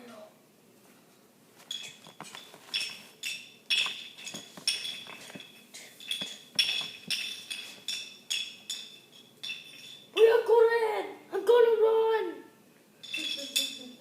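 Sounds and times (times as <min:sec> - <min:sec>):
metallic clinking steps: 0:01.6 - 0:10.1, 0:13.0 - 0:14.0.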